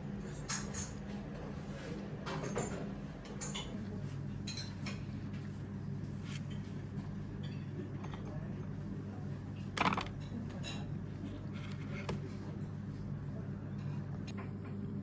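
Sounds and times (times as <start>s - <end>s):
steady low hum: 0.0s - 15.0s
dishes and cutlery clinking: 0.3s - 1.2s, 1.9s - 5.1s, 9.8s - 11.0s.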